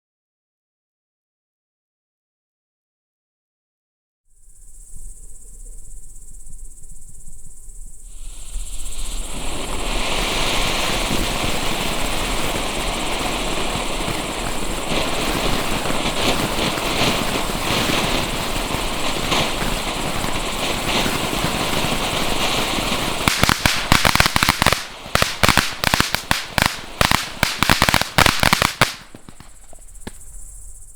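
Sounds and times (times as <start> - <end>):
firework fountain hissing: 4.6 - 30.9
firework crackling: 7.3 - 30.9.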